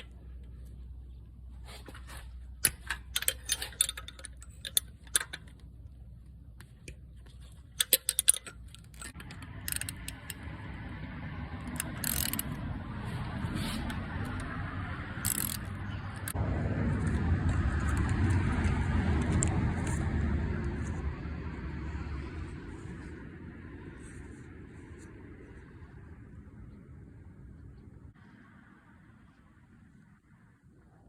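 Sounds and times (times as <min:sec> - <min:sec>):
low rumbling noise: 0:09.0 - 0:31.0.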